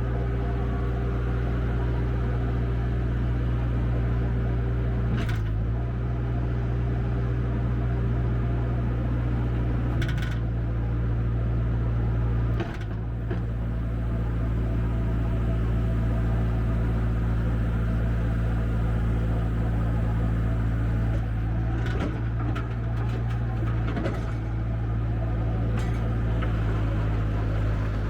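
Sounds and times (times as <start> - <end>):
diesel engine running: 0.0 - 8.1, 12.2 - 28.0.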